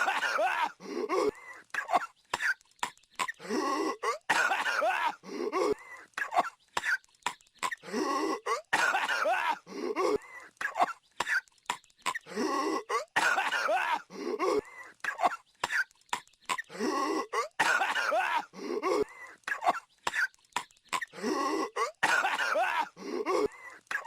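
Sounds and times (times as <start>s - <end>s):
cartoon character coughing: 7.7s - 11.4s.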